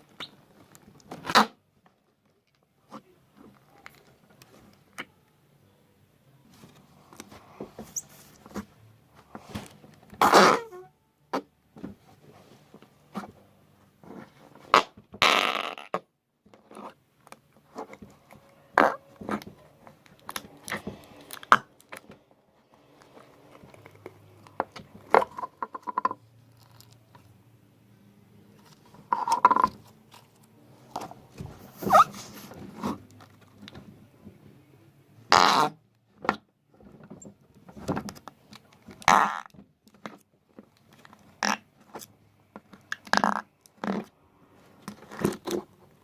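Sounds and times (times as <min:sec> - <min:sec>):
fart sounds: 0:10.2 - 0:10.9, 0:14.6 - 0:16.0, 0:35.3 - 0:35.8, 0:39.0 - 0:39.5.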